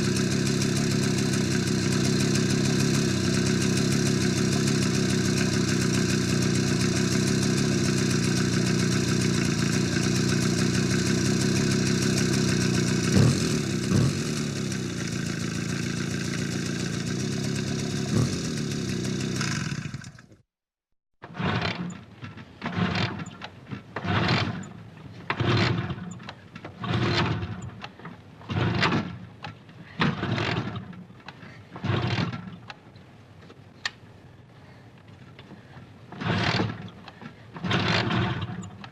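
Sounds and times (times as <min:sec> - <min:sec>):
motorcycle engine running: 0:00.0 - 0:20.4.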